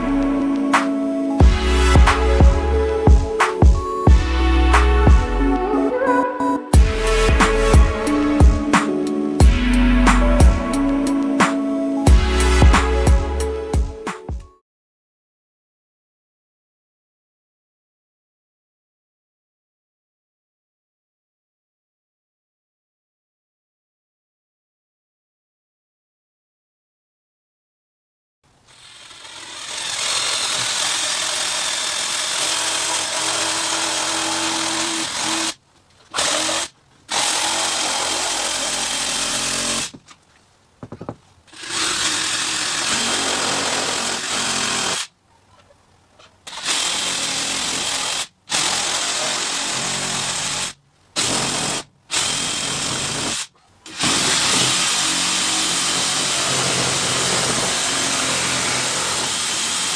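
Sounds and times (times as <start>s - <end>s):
power tool cutting pipes: 28.7s - 40.0s, 40.9s - 45.1s, 46.5s - 59.9s.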